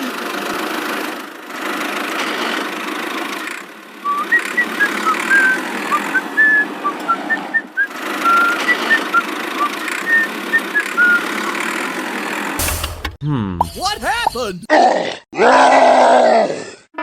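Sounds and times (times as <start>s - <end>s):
small engine running: 0.0s - 6.8s, 7.8s - 12.6s.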